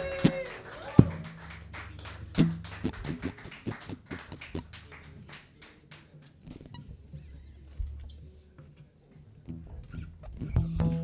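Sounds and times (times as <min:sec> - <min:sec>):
audience clapping: 0:00.0 - 0:06.4.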